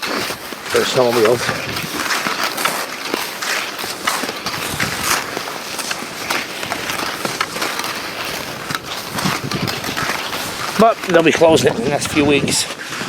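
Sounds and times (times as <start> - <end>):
skis scraping over icy snow: 0.0 - 13.0.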